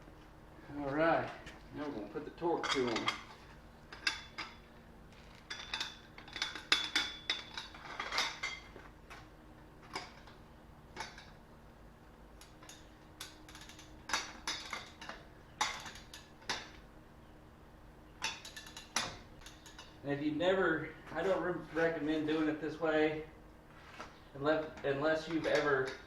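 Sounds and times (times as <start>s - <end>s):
faint steady hum: 0.0s - 26.0s
wrench clinking on lug nuts: 2.5s - 4.6s, 5.4s - 8.7s, 18.2s - 20.0s.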